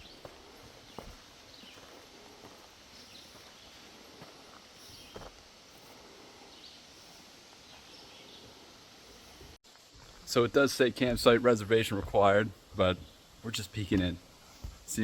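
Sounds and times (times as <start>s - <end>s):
soft footsteps: 0.0s - 6.0s.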